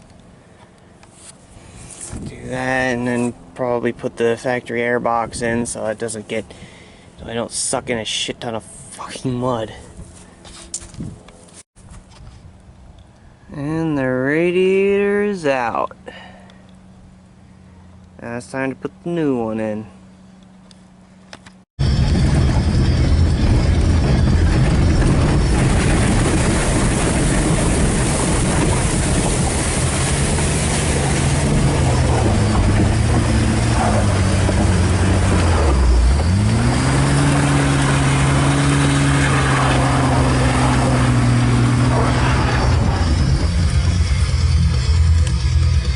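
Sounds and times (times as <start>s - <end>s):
vehicle engine running: 20.0s - 45.9s
noisy rush: 21.8s - 45.9s.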